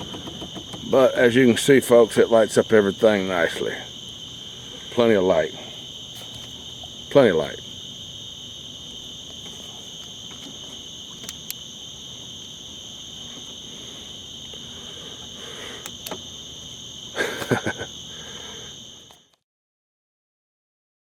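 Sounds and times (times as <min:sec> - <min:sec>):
night insects trilling: 0:00.0 - 0:19.4
sharp clicks: 0:11.2 - 0:11.6, 0:15.8 - 0:16.2.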